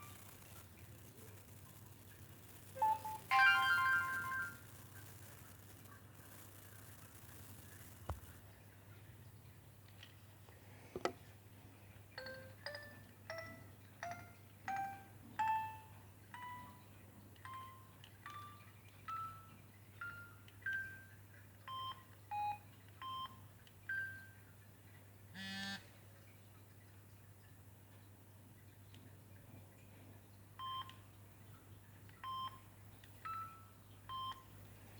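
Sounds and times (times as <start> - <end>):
mobile phone ringtone melody: 2.8 - 4.6, 12.2 - 16.9.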